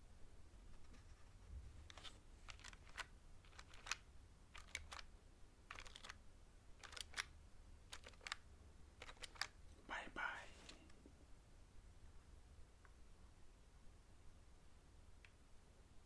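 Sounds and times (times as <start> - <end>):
soft mechanical keyboard clicks: 1.9 - 5.1, 5.7 - 6.2, 6.8 - 8.4, 9.0 - 9.6.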